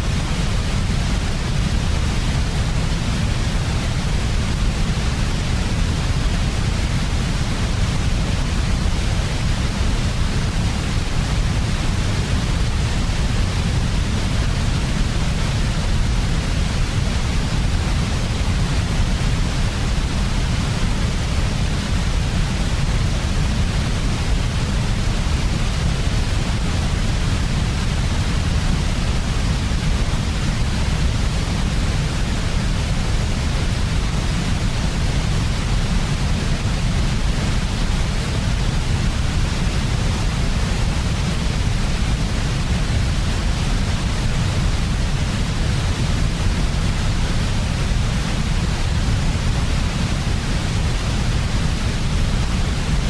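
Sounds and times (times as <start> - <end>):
white noise hiss: 0.0 - 53.0.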